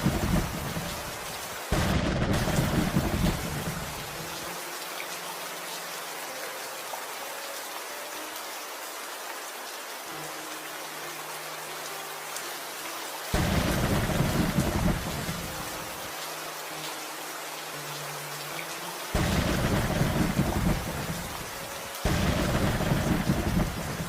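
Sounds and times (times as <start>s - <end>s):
thunder rumbling: 0.0s - 1.1s, 1.7s - 4.2s, 13.4s - 15.6s, 19.2s - 24.0s
steady rain falling: 0.0s - 24.0s.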